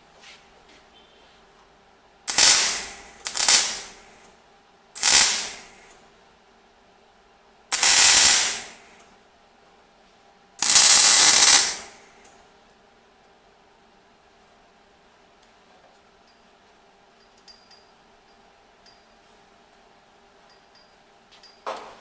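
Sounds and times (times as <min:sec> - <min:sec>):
welder crackling: 0:02.3 - 0:04.0, 0:05.0 - 0:05.8, 0:07.7 - 0:08.8, 0:10.6 - 0:12.0.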